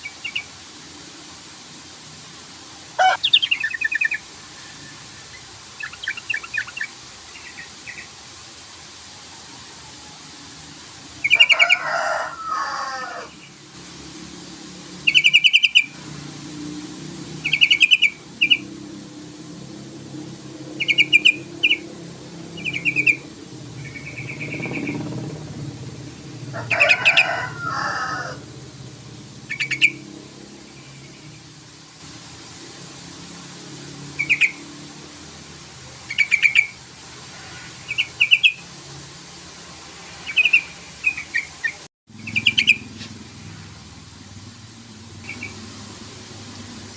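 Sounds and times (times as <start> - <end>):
bird chattering: 3.0 - 4.2, 17.4 - 18.6, 20.8 - 21.8, 22.6 - 23.2, 23.8 - 25.1, 29.5 - 30.0, 36.1 - 36.8, 40.3 - 42.9
bird rattling calls: 3.0 - 4.3, 23.8 - 25.2.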